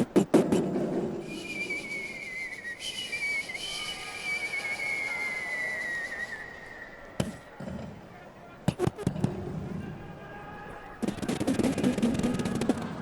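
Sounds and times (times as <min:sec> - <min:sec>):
man imitating whistling firework: 0:00.0 - 0:07.0.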